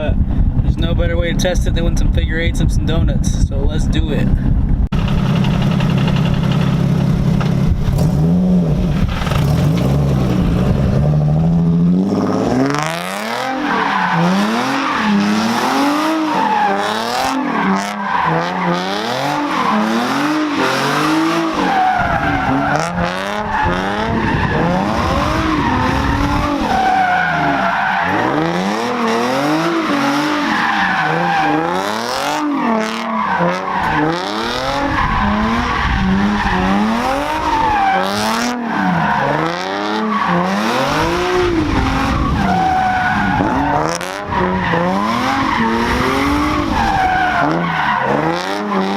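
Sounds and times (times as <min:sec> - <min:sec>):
car engine revving: 0:04.8 - 0:48.9
tyres squealing: 0:16.2 - 0:40.5.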